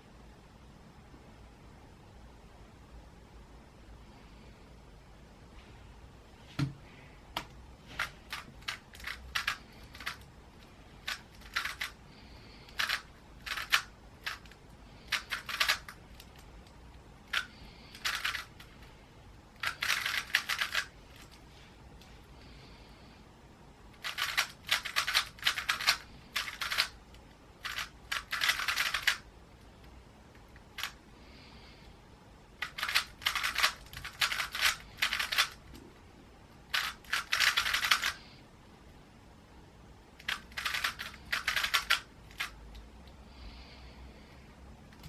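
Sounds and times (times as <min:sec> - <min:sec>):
puzzle cube plastic clicking: 0:07.4 - 0:10.3, 0:11.0 - 0:12.0, 0:12.7 - 0:18.6, 0:19.6 - 0:21.4, 0:24.0 - 0:29.3, 0:32.6 - 0:35.8, 0:36.7 - 0:38.2, 0:40.2 - 0:42.6.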